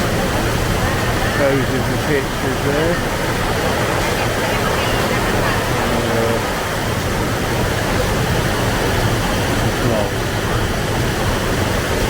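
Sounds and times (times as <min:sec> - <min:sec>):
faint voices of people: 0:00.0 - 0:06.6
waterfall rushing into pool: 0:00.0 - 0:12.0.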